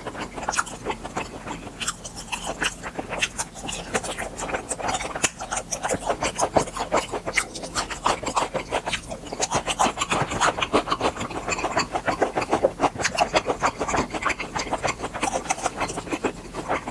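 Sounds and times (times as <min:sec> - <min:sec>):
close chewing: 0:00.0 - 0:16.9.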